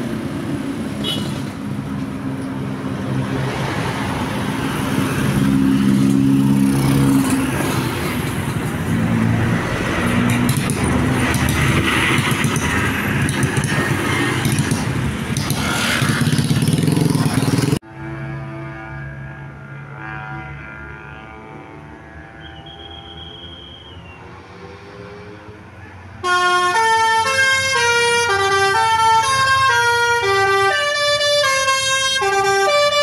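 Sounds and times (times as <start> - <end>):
road traffic: 0.0 - 33.0
multi-tone bus horn: 1.0 - 1.6, 17.8 - 24.2, 26.2 - 33.0.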